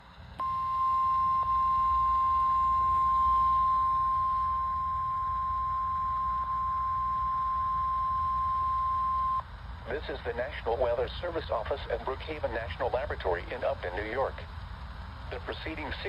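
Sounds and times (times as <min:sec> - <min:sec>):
long steady warning beep: 0:00.4 - 0:09.5
radio noise: 0:09.9 - 0:14.5, 0:15.3 - 0:16.0.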